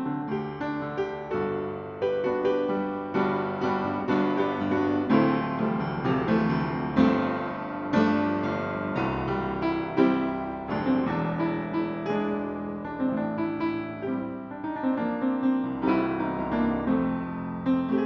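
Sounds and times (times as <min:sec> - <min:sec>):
piano notes and chords: 0:00.0 - 0:18.0.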